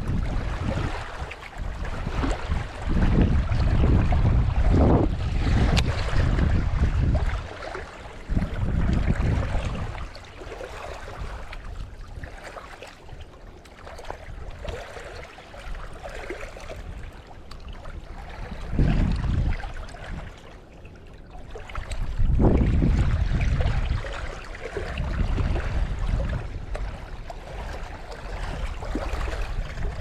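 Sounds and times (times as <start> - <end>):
wind buffeting microphone: 0.0 - 20.6, 21.2 - 30.0.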